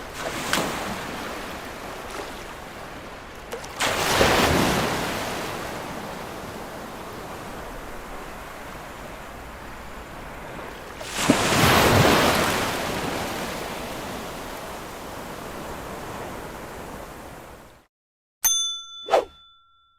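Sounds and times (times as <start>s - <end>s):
surf washing on beach: 0.0s - 17.8s
wave breaking: 3.6s - 17.2s.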